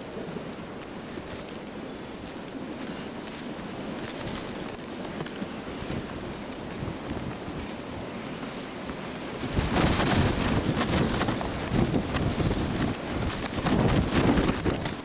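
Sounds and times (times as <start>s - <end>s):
blizzard wind gusting on microphone: 0.0s - 15.0s.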